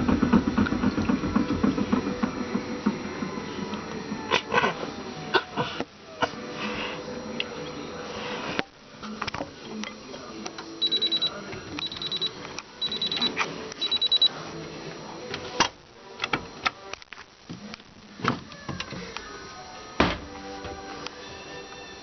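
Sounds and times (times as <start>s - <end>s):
washing machine beeping: 0.0s - 6.2s, 10.6s - 15.6s.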